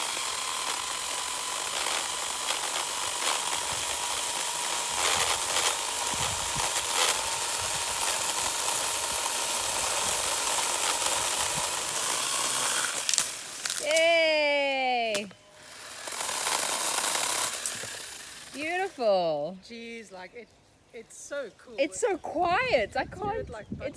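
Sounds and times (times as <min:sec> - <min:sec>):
wood crackles: 0:00.0 - 0:14.3, 0:15.1 - 0:19.0
electric chainsaw motor whine: 0:00.0 - 0:19.0.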